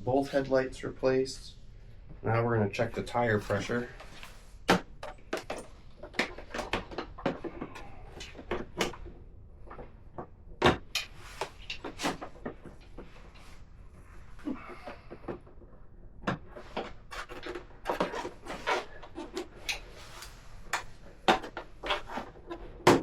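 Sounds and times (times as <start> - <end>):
tools clicking and knocking: 9.7 - 13.4.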